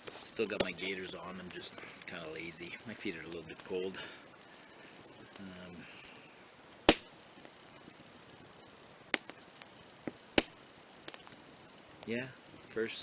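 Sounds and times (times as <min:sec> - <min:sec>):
campfire crackling and popping: 0:00.0 - 0:13.0.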